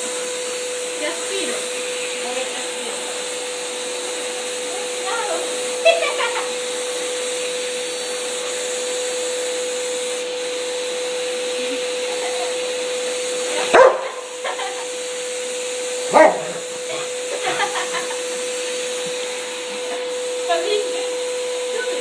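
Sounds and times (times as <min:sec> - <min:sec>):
vacuum cleaner humming: 0:00.0 - 0:22.0
dog barking: 0:13.6 - 0:14.3, 0:16.1 - 0:17.1.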